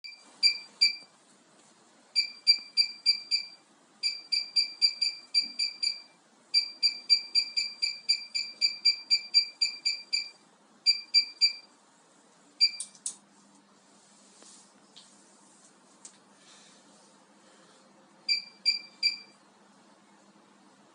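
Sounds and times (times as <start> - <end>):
short high electronic beeps: 0.0 - 1.1, 2.2 - 11.7, 12.6 - 12.9.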